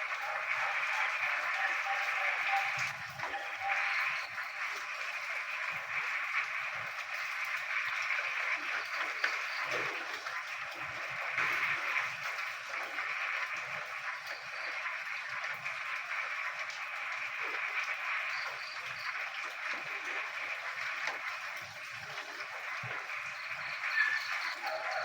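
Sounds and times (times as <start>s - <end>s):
frogs chorus: 0.0s - 25.0s
rain: 0.0s - 25.0s.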